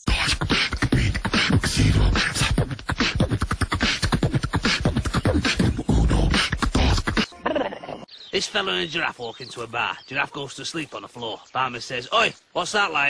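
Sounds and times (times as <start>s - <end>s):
person beatboxing: 0.0s - 7.3s.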